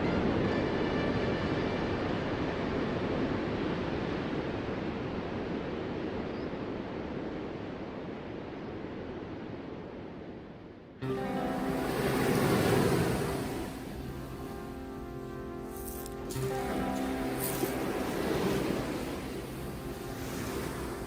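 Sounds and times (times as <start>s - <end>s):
music with held tones: 0.0s - 2.6s, 11.0s - 21.0s
ocean waves breaking: 0.0s - 21.0s.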